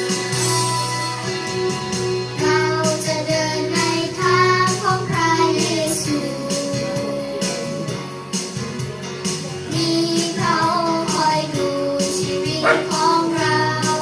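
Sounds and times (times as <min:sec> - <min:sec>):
guitar playing: 0:12.6 - 0:13.2
people singing worship song: 0:12.6 - 0:14.0.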